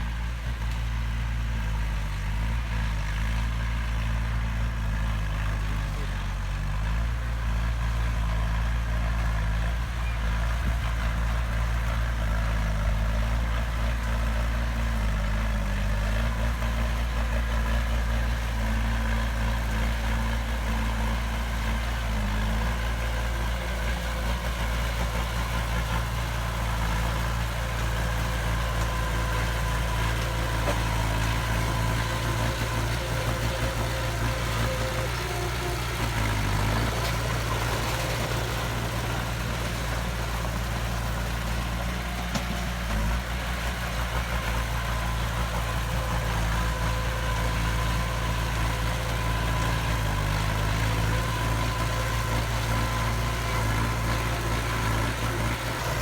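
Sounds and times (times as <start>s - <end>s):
diesel engine running: 0.0s - 56.0s.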